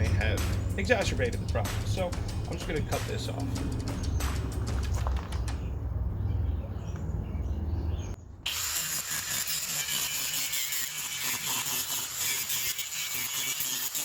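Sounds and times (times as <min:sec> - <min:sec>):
power tool grinding rivets: 0:08.5 - 0:14.0.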